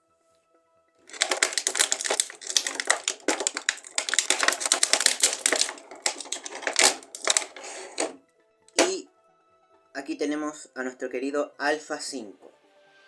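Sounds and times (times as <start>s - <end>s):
plastic packaging crinkling: 1.1s - 8.2s.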